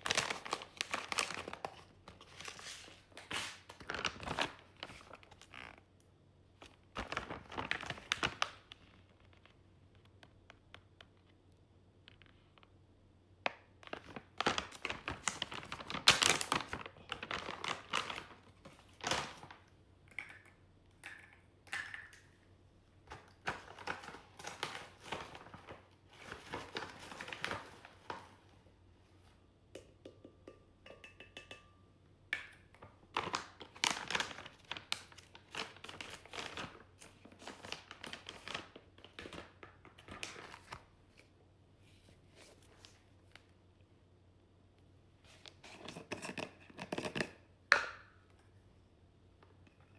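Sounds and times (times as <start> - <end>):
plastic packaging crinkling: 0.0 - 5.8, 6.6 - 10.1, 13.5 - 19.7, 23.3 - 28.4, 32.8 - 40.9.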